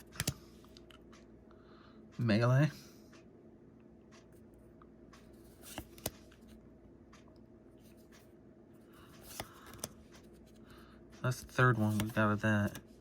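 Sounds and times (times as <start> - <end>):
cards sliding and tapping: 0.0 - 0.4, 5.2 - 6.6, 9.1 - 10.7, 11.5 - 12.9.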